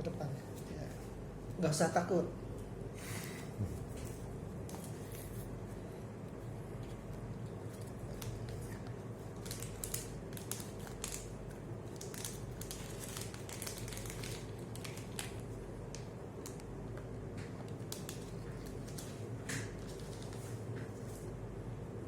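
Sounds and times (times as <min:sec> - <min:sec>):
steady low hum: 0:00.0 - 0:22.0
packaging clicks and rustles: 0:07.5 - 0:16.6, 0:17.7 - 0:20.6.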